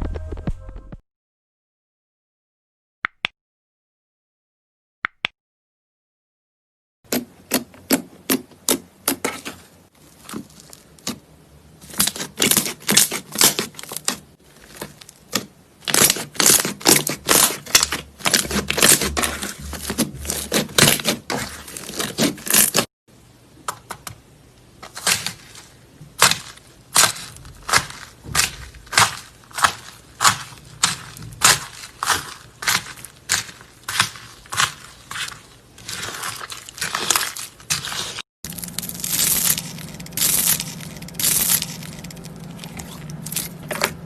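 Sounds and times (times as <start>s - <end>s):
crunchy slime crackling: 9.3s - 22.9s, 24.9s - 44.0s.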